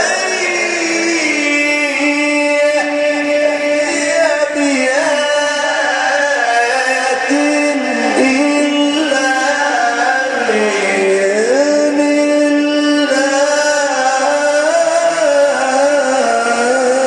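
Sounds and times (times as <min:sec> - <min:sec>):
man reciting melodically: 0:00.0 - 0:17.0.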